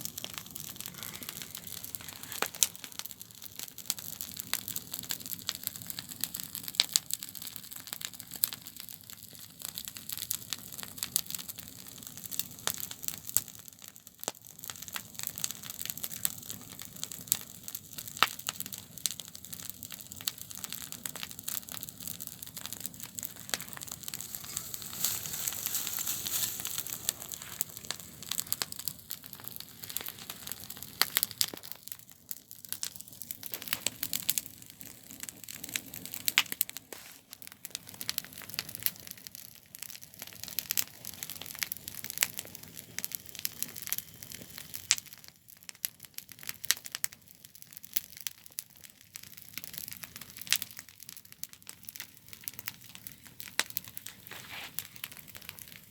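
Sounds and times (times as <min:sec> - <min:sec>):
fire hiss: 0:00.0 - 0:06.8, 0:19.8 - 0:32.0, 0:32.7 - 0:45.2, 0:52.0 - 0:55.9
campfire crackling and popping: 0:00.0 - 0:55.9.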